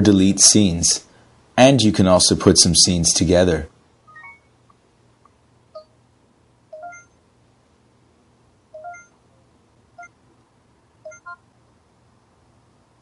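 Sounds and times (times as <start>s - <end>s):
faint steady hum: 0.0s - 13.0s
short electronic button beeps: 4.1s - 4.5s, 11.1s - 11.4s.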